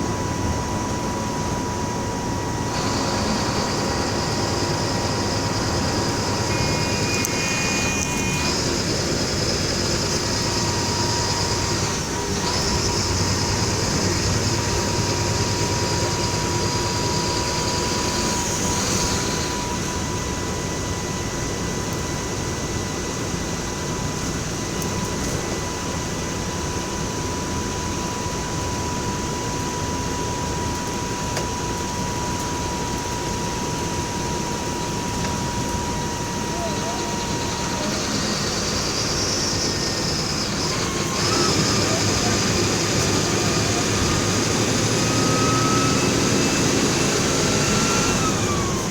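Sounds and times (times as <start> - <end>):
high steady whine: 0.0 - 48.9
bus engine running: 2.0 - 19.9, 36.4 - 48.9.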